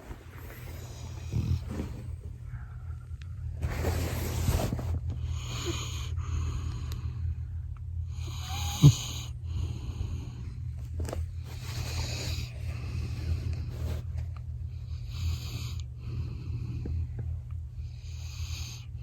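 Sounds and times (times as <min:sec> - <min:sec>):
dog snoring: 0:00.0 - 0:02.5, 0:03.6 - 0:07.1, 0:08.1 - 0:10.6, 0:11.4 - 0:14.1, 0:14.8 - 0:17.2, 0:17.8 - 0:19.0.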